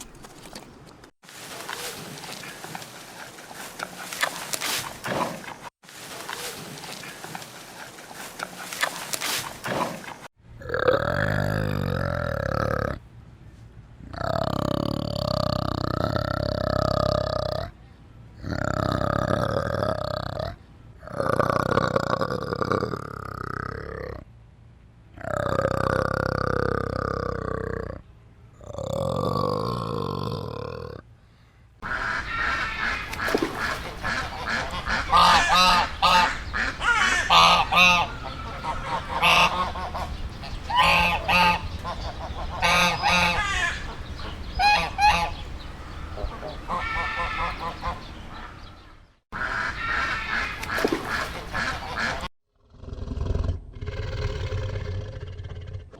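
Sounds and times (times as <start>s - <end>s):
animal rasping calls: 31.8s - 45.5s
geese honking: 31.8s - 48.6s, 49.4s - 52.3s.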